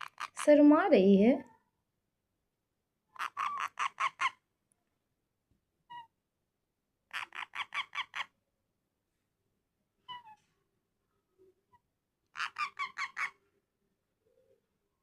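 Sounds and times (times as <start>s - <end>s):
parrot calling: 0.0s - 0.4s, 3.1s - 4.5s, 5.9s - 6.1s, 7.1s - 8.4s, 10.0s - 10.4s, 12.3s - 13.5s.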